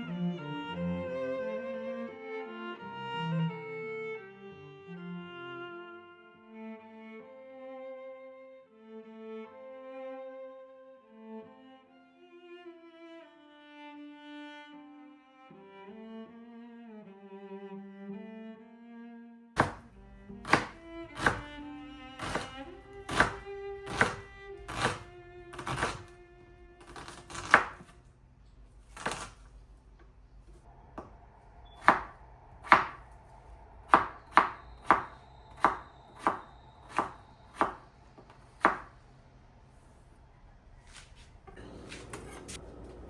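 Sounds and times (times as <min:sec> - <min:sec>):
soft bowed-string music: 0:00.0 - 0:28.2
knife chopping on cutting board: 0:19.6 - 0:21.5, 0:22.2 - 0:26.1, 0:26.8 - 0:28.0, 0:28.9 - 0:29.5, 0:31.8 - 0:33.0, 0:33.9 - 0:38.9.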